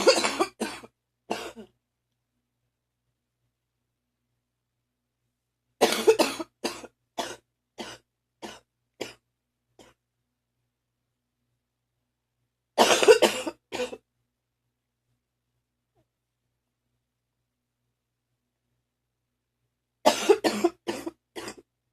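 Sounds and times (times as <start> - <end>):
person coughing phlegmy: 0.0 - 1.8, 5.8 - 9.2, 12.8 - 14.0, 20.1 - 21.7.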